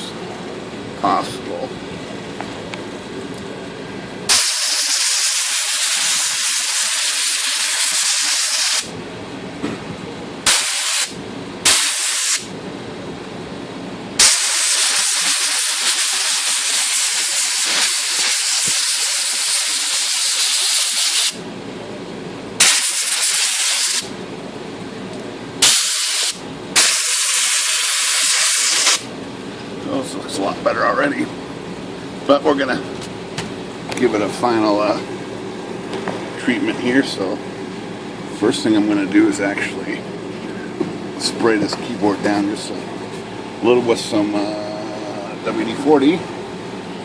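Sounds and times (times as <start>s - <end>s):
compressed air blasts hissing: 4.3s - 8.9s, 10.5s - 12.5s, 14.2s - 21.4s, 22.6s - 24.1s, 25.6s - 29.1s.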